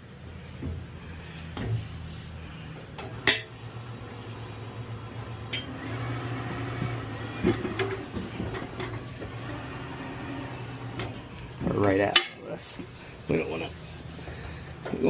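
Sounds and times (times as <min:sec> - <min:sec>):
metal tools clanking: 0:05.5 - 0:05.8.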